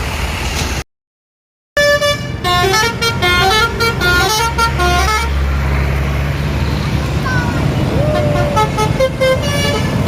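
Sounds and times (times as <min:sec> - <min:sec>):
street noise: 0:00.0 - 0:00.8, 0:01.8 - 0:10.0
bus engine: 0:00.0 - 0:00.9, 0:01.8 - 0:10.0
bus horn playing a tune: 0:01.8 - 0:05.5, 0:08.1 - 0:10.0.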